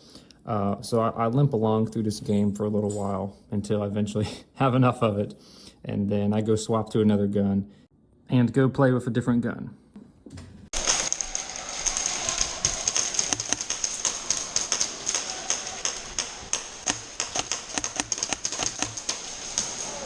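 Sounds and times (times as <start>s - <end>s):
airsoft guns shooting: 10.7s - 20.0s.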